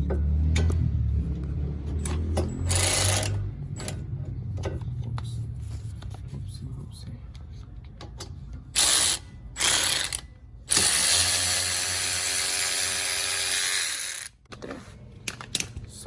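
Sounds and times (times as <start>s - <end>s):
ratchet clicking: 2.0s - 4.0s, 8.8s - 14.4s.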